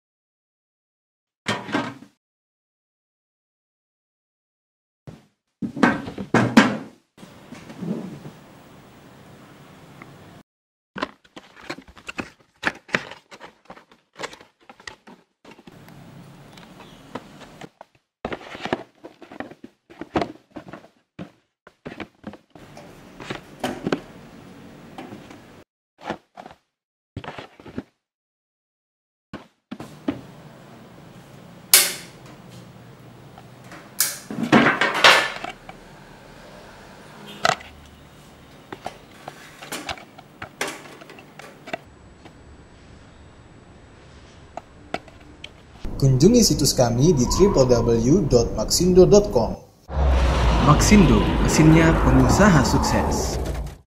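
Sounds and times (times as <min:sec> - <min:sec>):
box rustling: 0:11.0 - 0:15.7, 0:17.6 - 0:22.4.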